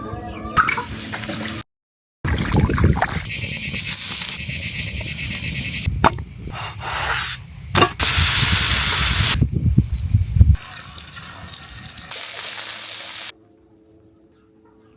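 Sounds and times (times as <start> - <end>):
food sizzling over fire: 3.3 - 5.9, 8.0 - 9.4, 10.5 - 13.3.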